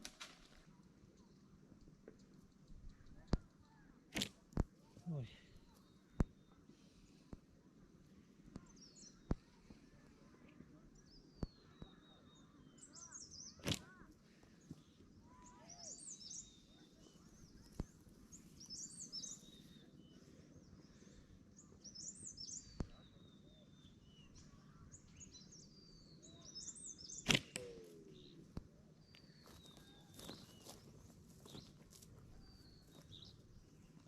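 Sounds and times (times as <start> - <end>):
birds chirping: 8.2 - 34.0.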